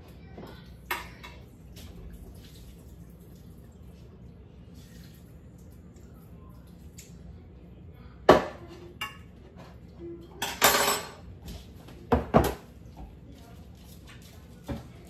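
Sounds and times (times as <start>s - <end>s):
dishes and utensils clinking: 0.4s - 1.5s, 8.3s - 12.7s.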